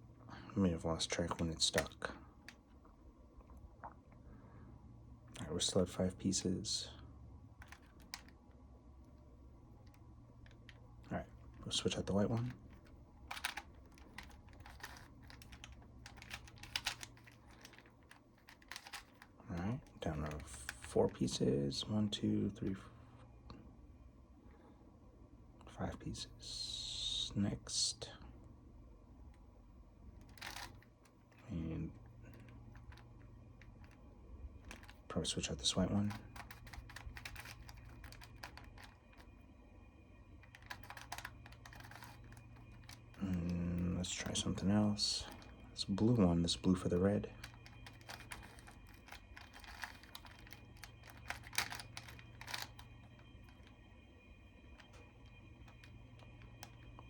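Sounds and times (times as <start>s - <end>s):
puzzle cube clicking as twisted: 7.6s - 8.3s, 12.4s - 19.3s, 30.2s - 30.9s, 34.6s - 35.0s, 35.8s - 39.3s, 40.4s - 44.5s, 46.6s - 53.7s.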